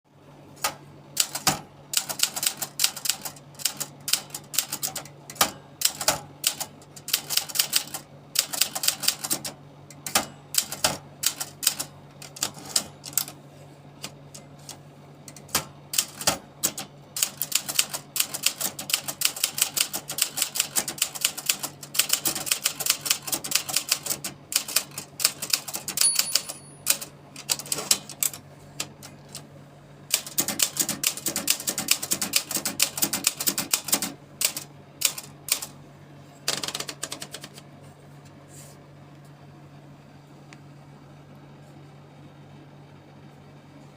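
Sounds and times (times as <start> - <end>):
manual typewriter typing: 0.6 - 13.4, 14.0 - 29.4, 30.1 - 35.8, 36.5 - 37.6.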